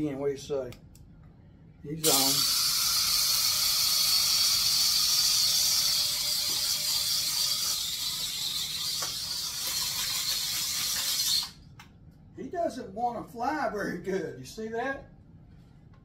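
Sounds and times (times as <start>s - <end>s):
toy helicopter rotors whirring: 2.0s - 11.6s.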